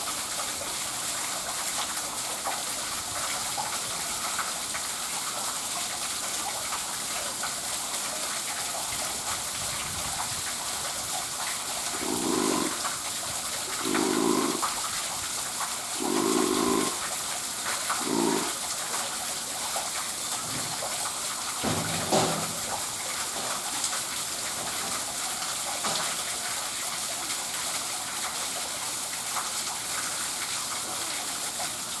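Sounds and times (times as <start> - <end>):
water rushing: 8.8 - 21.2
seal making snore-like sounds: 11.9 - 13.0, 13.6 - 14.8, 16.0 - 17.0, 18.0 - 18.6.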